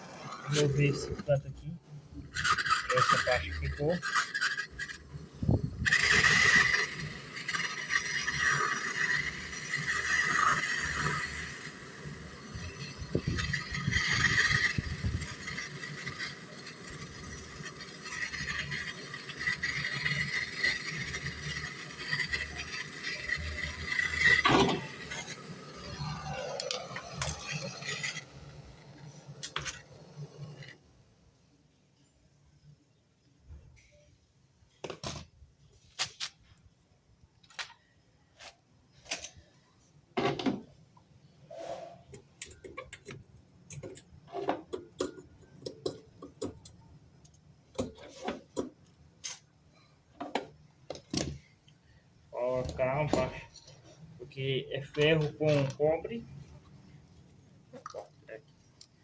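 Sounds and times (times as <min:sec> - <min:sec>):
hand scraping metal tube: 0:02.2 - 0:30.8.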